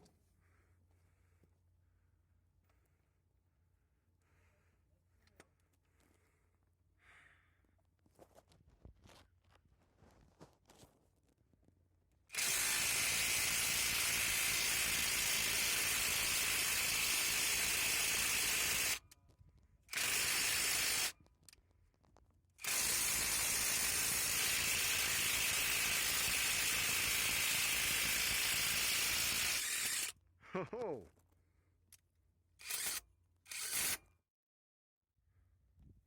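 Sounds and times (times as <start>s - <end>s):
impact wrench bursts: 12.3s - 19.0s, 19.9s - 21.1s, 22.6s - 30.1s, 32.6s - 34.0s.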